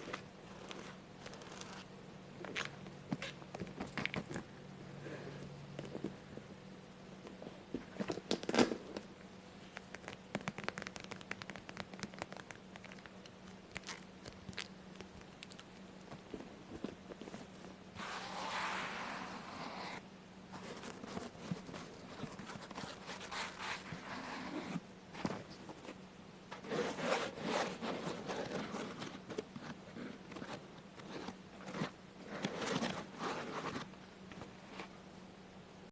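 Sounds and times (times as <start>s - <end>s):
faint steady hum: 0.0s - 35.9s.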